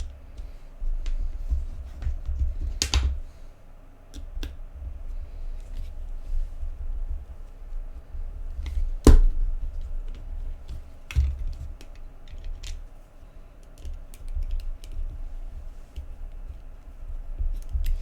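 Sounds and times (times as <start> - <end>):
small clicks and taps of handling: 4.1 - 4.6, 9.8 - 12.9, 13.6 - 15.3.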